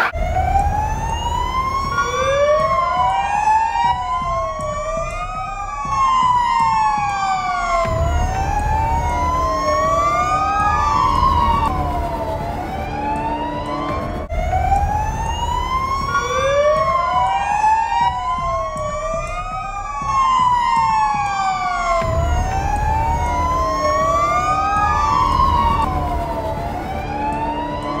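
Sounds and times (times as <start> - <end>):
fire truck siren wailing: 0.0 - 28.0
low vehicle rumble: 7.9 - 16.8, 21.9 - 28.0.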